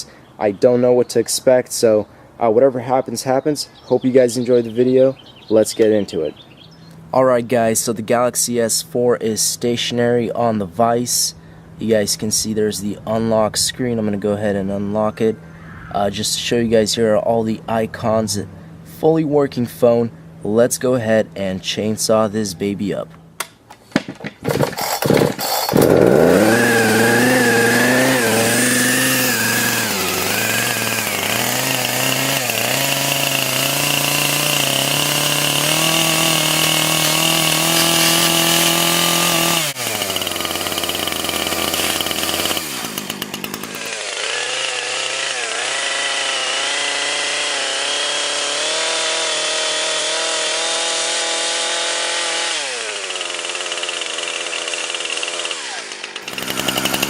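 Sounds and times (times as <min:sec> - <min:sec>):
chainsaw pull-start tugs: 0:24.1 - 0:57.0
chainsaw engine revving: 0:24.4 - 0:57.0.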